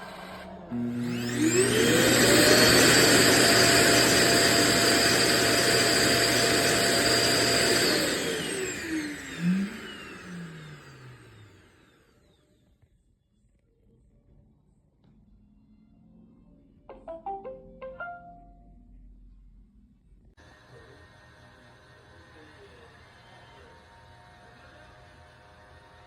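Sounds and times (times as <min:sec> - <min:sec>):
suction motor whining: 0:00.0 - 0:12.5.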